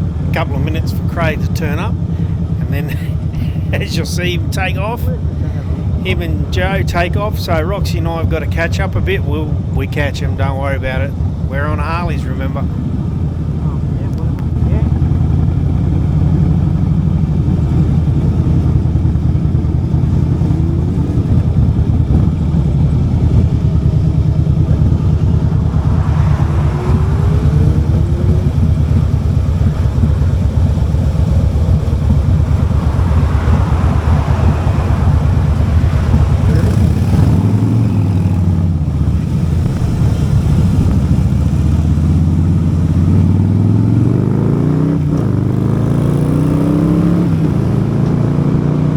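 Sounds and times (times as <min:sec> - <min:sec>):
motorcycle engine accelerating: 0:00.0 - 0:48.9.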